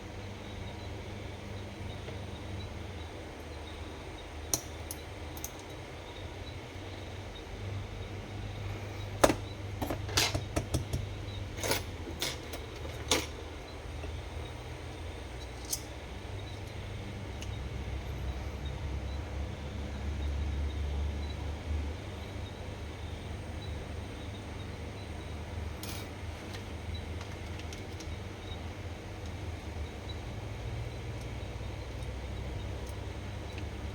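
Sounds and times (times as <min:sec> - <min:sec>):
low steady hum: 0:00.0 - 0:33.9.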